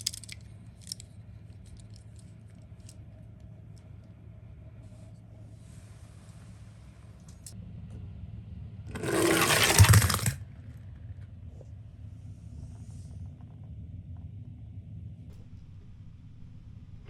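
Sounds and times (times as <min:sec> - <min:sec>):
toy cars rattling on cardboard: 0:00.0 - 0:03.0, 0:09.0 - 0:10.4
low steady hum: 0:00.0 - 0:17.0.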